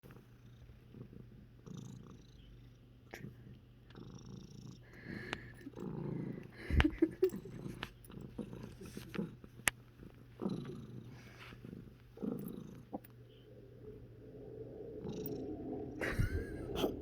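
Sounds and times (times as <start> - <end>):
low steady rumble: 5.6 - 17.0.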